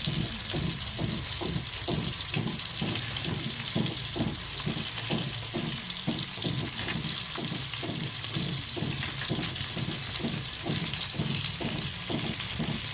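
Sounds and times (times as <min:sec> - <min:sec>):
chicken frying in hot oil: 0:00.0 - 0:12.9
oil bubbling pops: 0:00.0 - 0:12.9.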